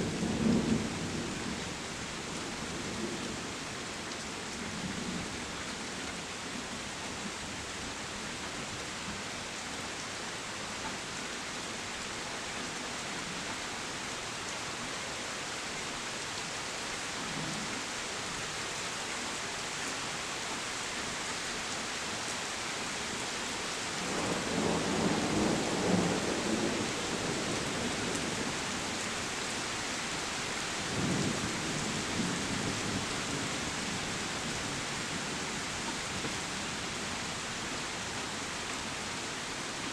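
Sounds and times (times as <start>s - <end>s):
heavy rain hissing: 13.2s - 39.9s.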